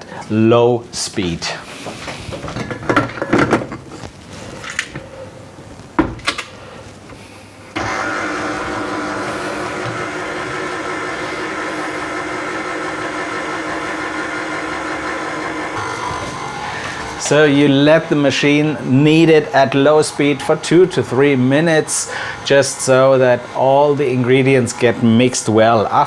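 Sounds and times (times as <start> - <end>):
stand mixer running at low speed: 7.7 - 26.0.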